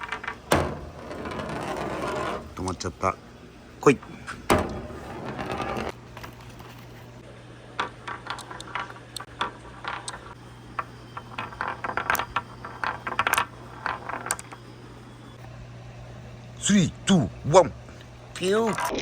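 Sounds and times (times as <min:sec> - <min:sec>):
marbles rattling on wooden track: 0:00.0 - 0:03.1, 0:04.5 - 0:06.9, 0:07.8 - 0:14.6
steady low hum: 0:00.0 - 0:19.0.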